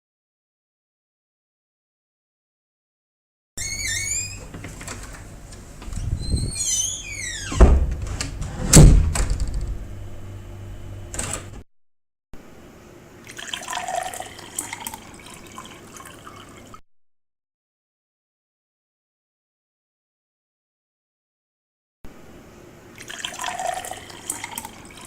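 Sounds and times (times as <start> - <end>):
heavy thumps: 7.5 - 10.0.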